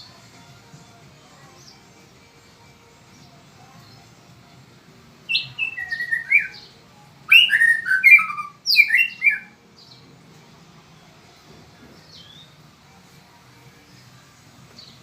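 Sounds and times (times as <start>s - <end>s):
bird singing whistled phrases: 5.3s - 6.7s, 7.3s - 9.6s.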